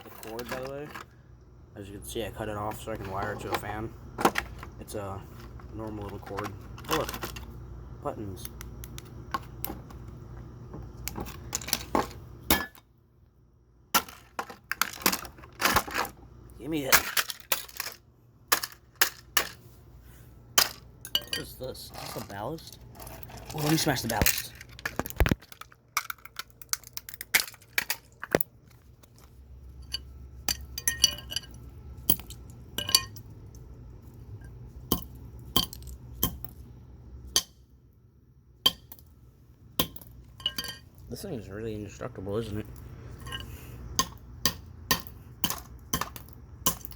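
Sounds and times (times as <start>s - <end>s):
plastic parts clattering: 0.0s - 1.2s, 2.7s - 7.5s, 11.1s - 12.8s, 14.0s - 16.2s, 16.8s - 19.6s, 20.6s - 30.0s.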